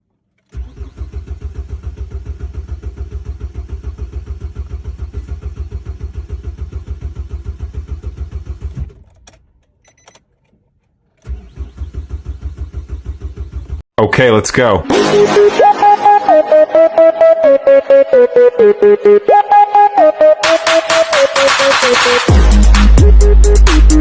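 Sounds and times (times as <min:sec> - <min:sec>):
car engine cranking: 0:00.0 - 0:13.8.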